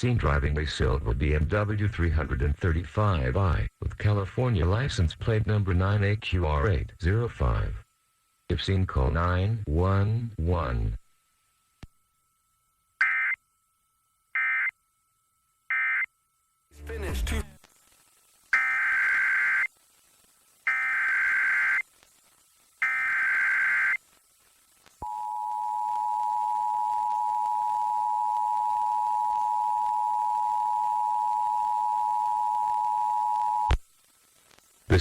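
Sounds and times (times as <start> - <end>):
warbling data tone bursts: 22.8 - 24.0.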